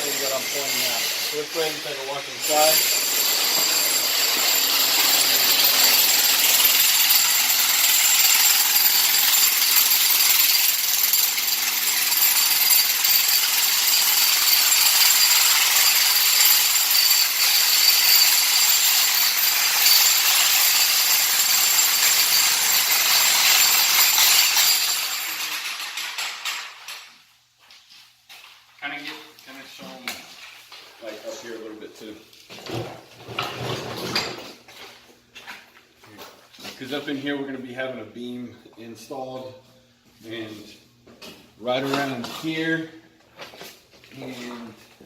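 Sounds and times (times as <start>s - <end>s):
loud power tool running: 0.0s - 25.7s.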